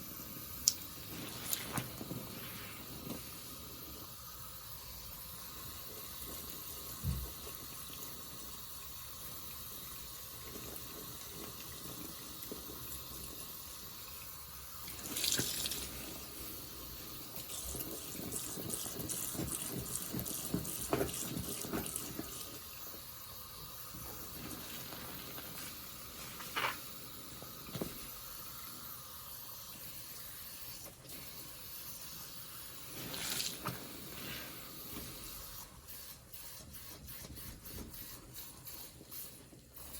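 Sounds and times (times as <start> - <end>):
soapy sponge squelching: 0.9 - 3.5, 14.8 - 22.6, 24.0 - 28.2, 32.7 - 39.9.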